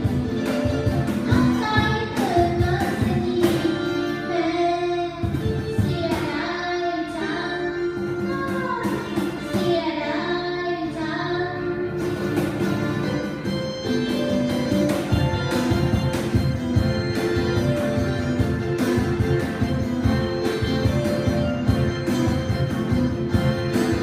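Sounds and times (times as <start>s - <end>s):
live band playing: 0.0s - 24.0s
person singing: 1.2s - 12.2s.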